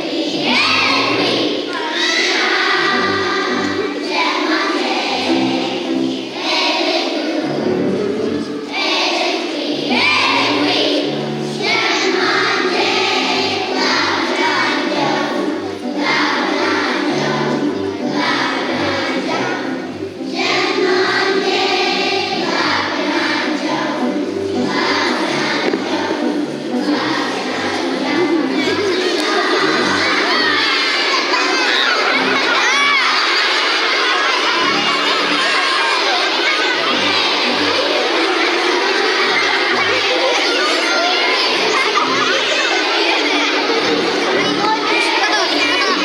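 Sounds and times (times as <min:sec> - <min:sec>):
children singing: 0:00.0 - 0:46.0
instrumental accompaniment with bass: 0:10.0 - 0:30.7.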